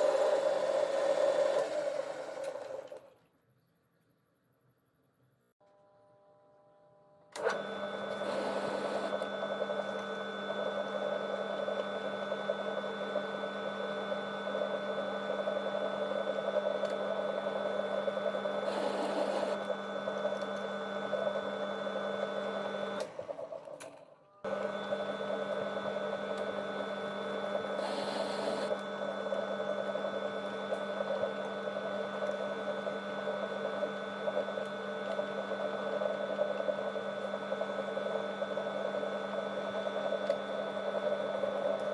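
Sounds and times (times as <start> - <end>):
metal lathe humming and whining: 24.5 - 32.2.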